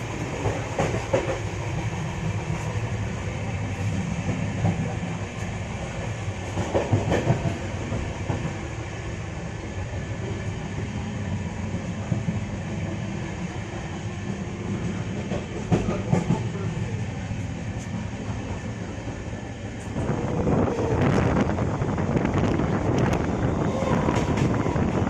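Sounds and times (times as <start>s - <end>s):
train wheels rumbling on rail: 0.0s - 25.0s
wind noise rushing: 19.9s - 25.0s.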